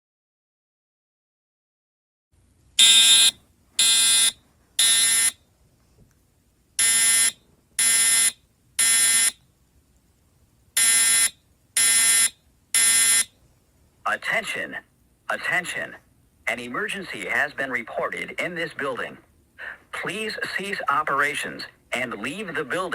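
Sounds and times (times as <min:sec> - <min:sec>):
fire alarm horn blasts: 0:02.8 - 0:05.4, 0:06.8 - 0:09.4, 0:10.8 - 0:13.3.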